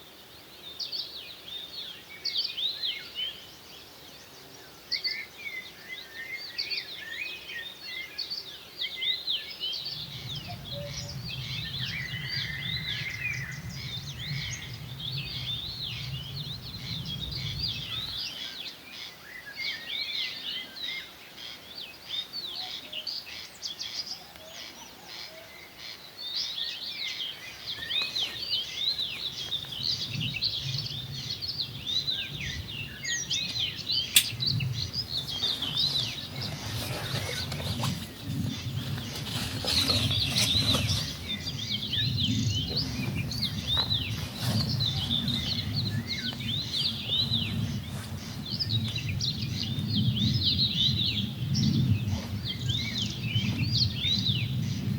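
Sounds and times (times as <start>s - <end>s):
songbirds chirping and trilling: 0.0s - 54.9s
low rumbling noise: 27.8s - 54.9s
sharp click: 34.1s - 34.4s.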